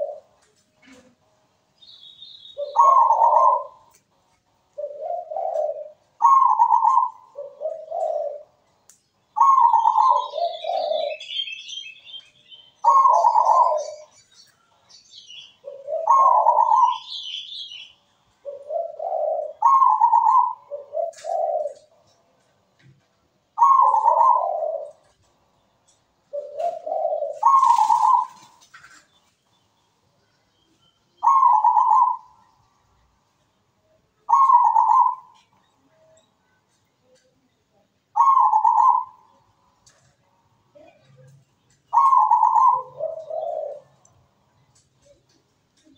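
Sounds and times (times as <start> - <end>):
dove cooing: 0.0 - 1.3, 2.6 - 3.9, 4.8 - 8.6, 9.4 - 11.5, 12.8 - 14.2, 15.4 - 17.2, 18.4 - 22.2, 23.6 - 25.2, 26.3 - 29.0, 31.2 - 32.4, 34.2 - 36.2, 38.1 - 39.4, 41.9 - 44.0
faint high chirping: 23.4 - 45.9.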